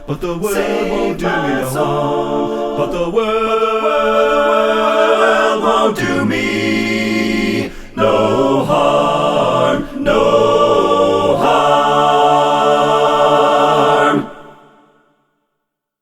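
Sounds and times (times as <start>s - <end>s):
a cappella vocal ensemble singing: 0.0s - 15.3s.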